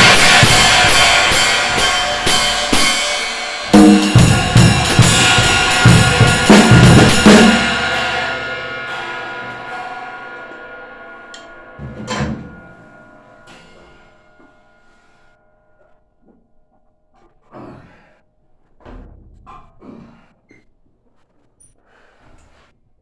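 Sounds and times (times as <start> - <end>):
low drum hit: 0.0 - 13.0
drum and cymbal hits: 0.0 - 14.6
cymbals ringing: 0.0 - 16.1
light cymbal tap: 8.9 - 12.6.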